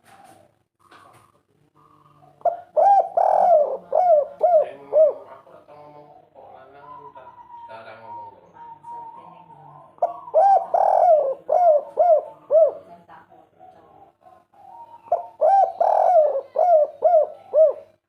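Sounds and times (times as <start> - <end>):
dove cooing: 0.0 - 18.0.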